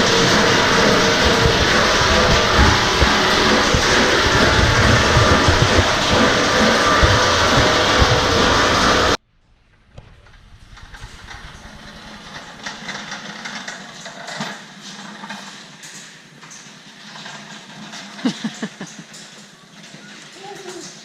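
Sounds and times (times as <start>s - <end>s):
low hum: 0.0s - 12.8s
machinery mechanical din: 0.0s - 14.0s.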